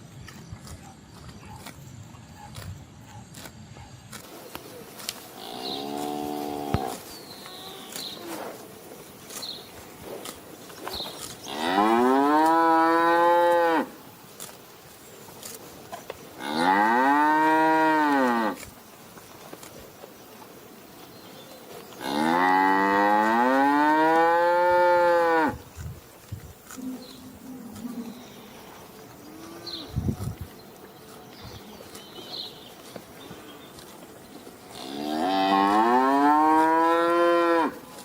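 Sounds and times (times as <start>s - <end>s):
cow mooing: 11.5s - 13.9s, 16.4s - 18.6s, 34.7s - 37.8s.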